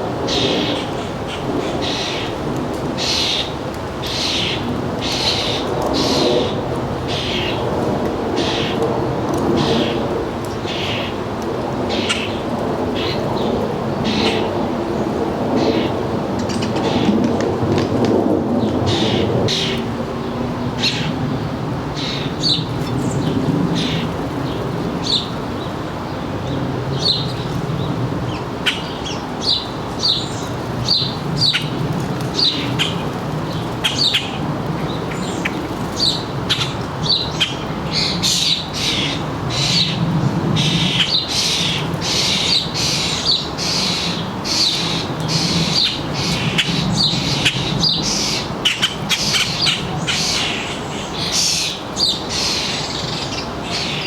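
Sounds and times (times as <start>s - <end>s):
songbirds chirping: 18.5s - 54.0s.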